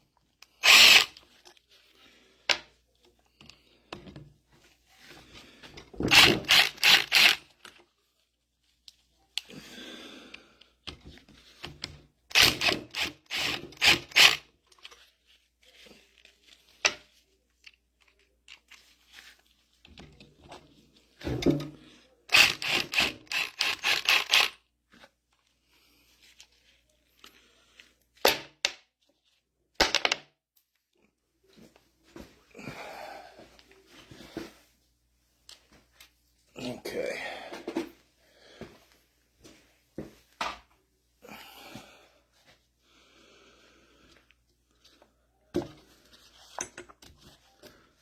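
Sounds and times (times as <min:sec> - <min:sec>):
metal parts and tools clattering: 0:00.6 - 0:01.1, 0:06.0 - 0:07.4, 0:21.3 - 0:24.6, 0:46.4 - 0:47.1.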